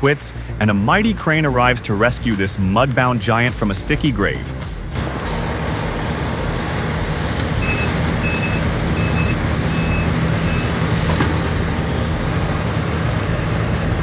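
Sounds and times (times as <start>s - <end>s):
heavy machine engine running: 4.9s - 14.0s
backup alarm beeping: 7.6s - 11.9s.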